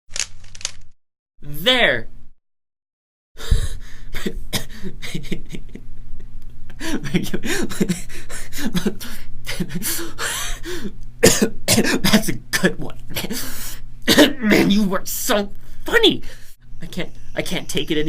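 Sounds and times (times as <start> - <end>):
person laughing: 4.2 - 10.9, 14.2 - 14.9.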